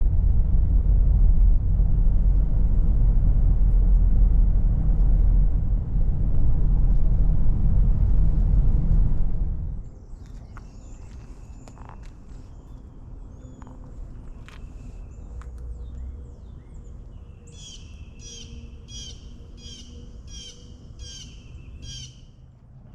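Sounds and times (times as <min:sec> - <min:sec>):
loud low rumble: 0:00.0 - 0:10.0
birds chirping: 0:09.9 - 0:22.4.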